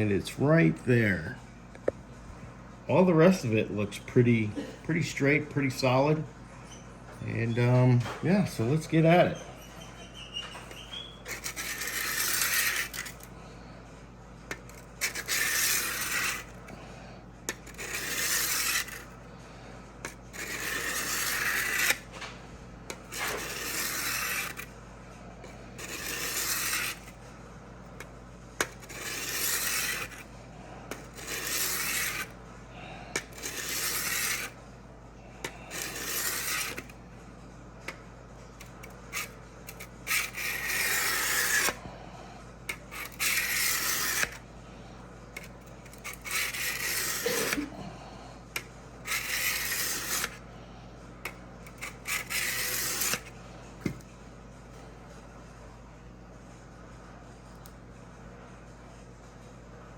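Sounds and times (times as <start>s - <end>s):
sharpening block scraping steel blade: 9.8s - 13.3s, 14.5s - 16.6s, 17.5s - 19.1s, 20.0s - 22.1s, 23.0s - 24.7s, 25.8s - 27.1s, 28.6s - 30.3s, 30.9s - 32.4s, 33.2s - 34.6s, 35.5s - 36.9s, 39.1s - 41.8s, 42.7s - 44.4s, 45.8s - 47.7s, 49.0s - 50.4s, 51.7s - 53.3s.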